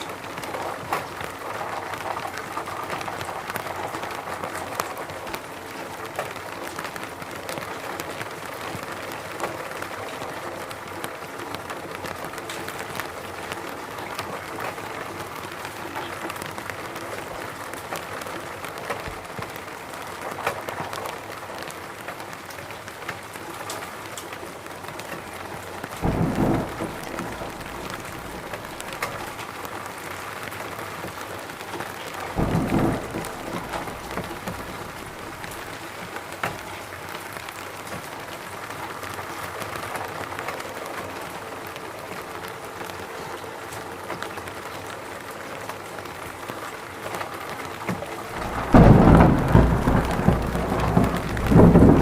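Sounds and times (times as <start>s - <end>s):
steady rain falling: 0.0s - 52.0s
low rumble of thunder: 25.9s - 29.7s, 32.2s - 36.2s, 48.3s - 52.0s.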